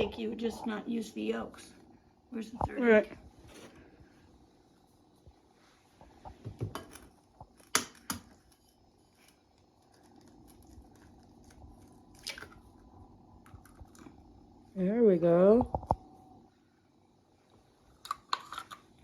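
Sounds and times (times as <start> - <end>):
egg cracking over bowl: 6.6 - 8.6, 9.2 - 12.8, 13.4 - 14.2, 18.0 - 19.0.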